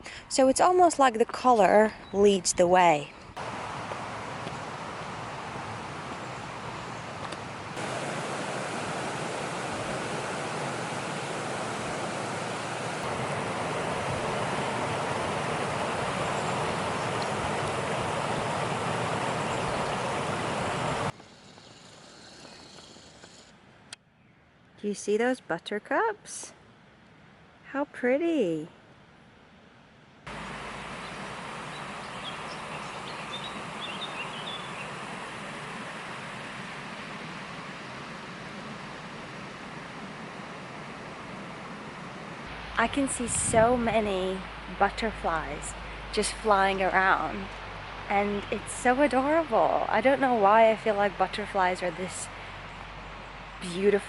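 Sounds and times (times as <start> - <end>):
steady rushing noise: 3.4 - 21.2, 30.3 - 53.8
small birds chirping: 14.4 - 23.5, 30.3 - 36.2.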